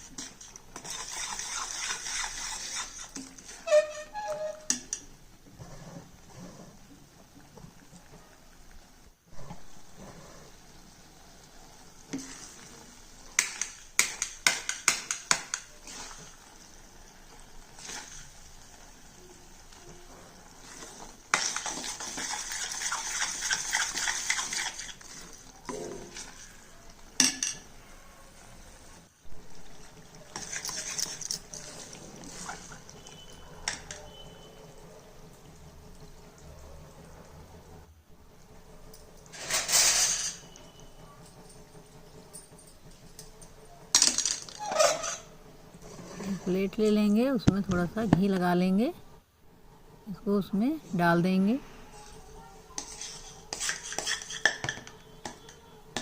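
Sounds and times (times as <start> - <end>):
spoon scraping a pan: 0.0 - 6.8, 12.0 - 16.7, 17.3 - 18.8, 20.4 - 27.7, 29.7 - 34.6, 39.3 - 41.0, 44.5 - 46.6, 51.6 - 56.0
spoon tapping a pan: 13.4 - 15.7, 53.6 - 56.0.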